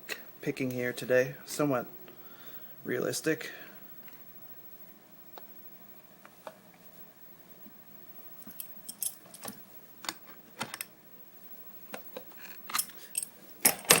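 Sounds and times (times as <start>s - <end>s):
metal objects clicking and clinking: 8.5s - 9.5s.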